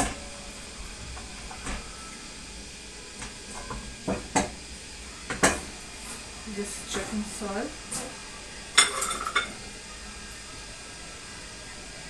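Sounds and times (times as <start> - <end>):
utensils clinking: 0.0 - 2.3, 3.2 - 10.4.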